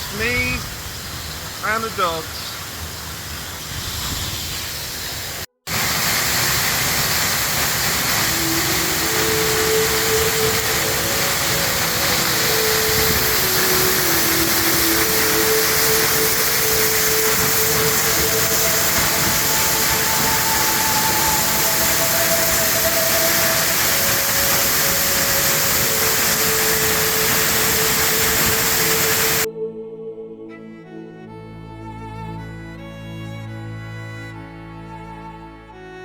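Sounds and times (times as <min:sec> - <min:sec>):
waterfall rushing water: 0:00.0 - 0:03.3, 0:04.8 - 0:29.5
slow background music: 0:07.6 - 0:36.0.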